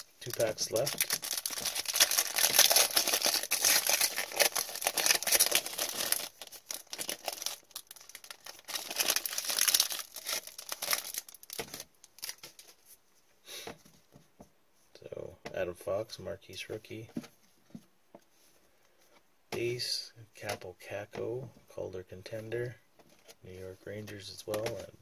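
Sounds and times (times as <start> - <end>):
wrapper tearing and crinkling: 0.0 - 12.8.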